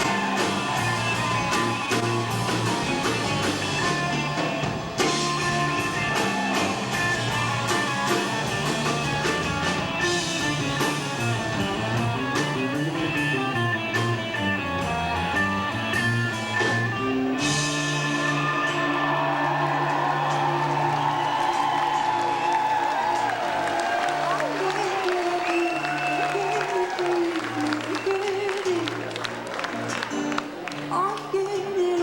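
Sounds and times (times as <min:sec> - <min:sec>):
drum-kit beat: 0:00.0 - 0:19.2
bass: 0:00.0 - 0:32.0
guitar: 0:00.0 - 0:32.0.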